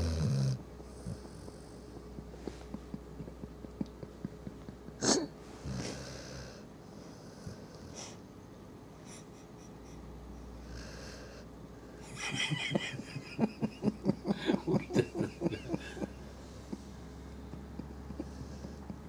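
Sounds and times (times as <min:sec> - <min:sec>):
dog snoring puffs: 0:00.0 - 0:08.2, 0:10.6 - 0:11.5, 0:17.4 - 0:19.0
dog breathing quietly: 0:05.6 - 0:08.3, 0:09.0 - 0:11.9.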